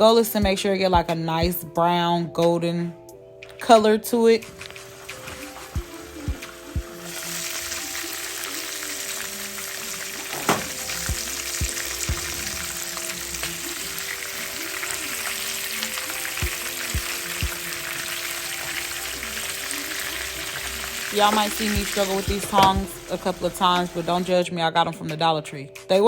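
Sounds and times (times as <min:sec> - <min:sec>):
chicken sizzling in hot oil: 0:04.4 - 0:24.3.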